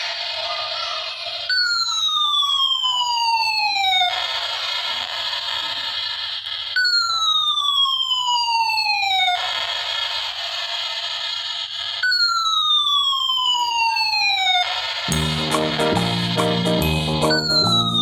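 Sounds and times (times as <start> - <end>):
toy gun electronic siren: 0.0 - 15.1, 17.2 - 18.0.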